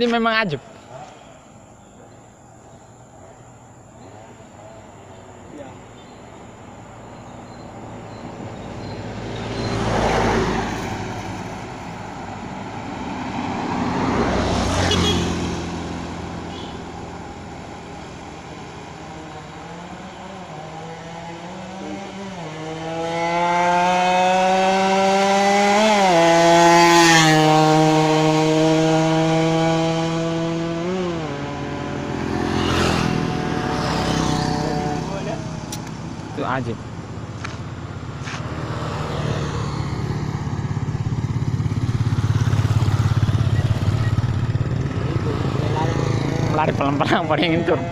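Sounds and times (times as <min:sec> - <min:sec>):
motorcycle engine running hard: 0:11.5 - 0:47.9.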